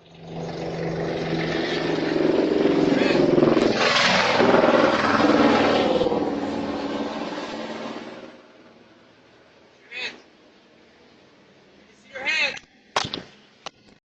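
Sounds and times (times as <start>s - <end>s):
vehicle engine passing by: 0.0s - 9.6s.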